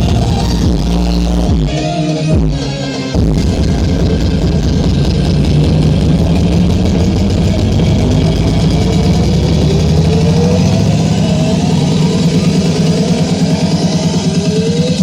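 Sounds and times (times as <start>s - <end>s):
large engine idling: 3.2s - 15.0s.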